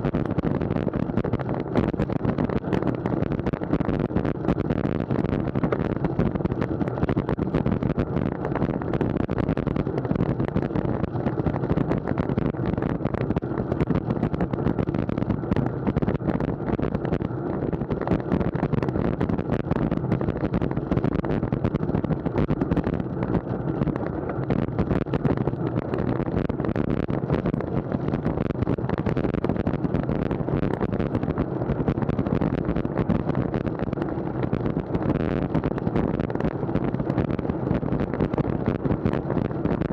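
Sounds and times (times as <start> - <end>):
wind buffeting microphone: 0.0 - 39.9
bike ticks and rattles: 8.3 - 35.1.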